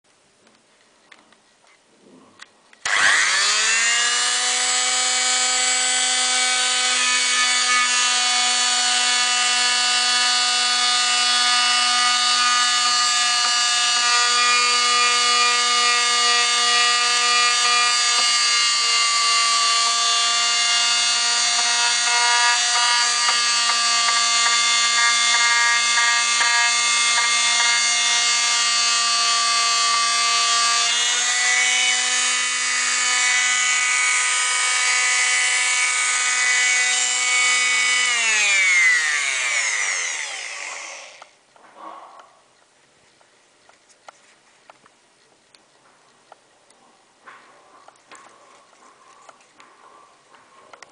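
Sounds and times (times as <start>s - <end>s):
oscillating multi-tool whining: 2.8s - 41.4s.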